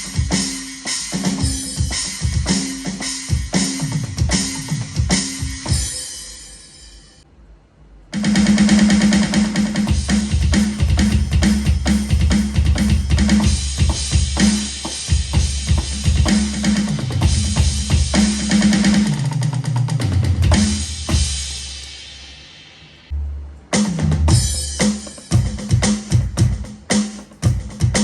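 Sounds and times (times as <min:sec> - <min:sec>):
electronic drum kit groove: 0:00.0 - 0:06.6, 0:08.1 - 0:22.4, 0:23.7 - 0:28.0
cymbal ringing: 0:00.0 - 0:07.2
tom fill: 0:08.2 - 0:19.4.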